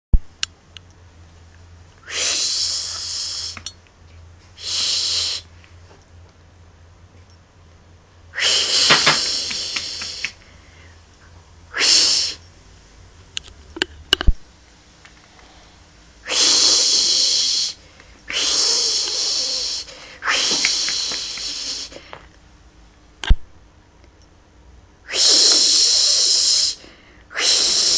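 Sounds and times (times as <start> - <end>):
cat hissing: 2.0 - 3.7, 4.6 - 5.5, 8.3 - 10.4, 11.7 - 12.4, 16.2 - 22.1, 25.1 - 27.9.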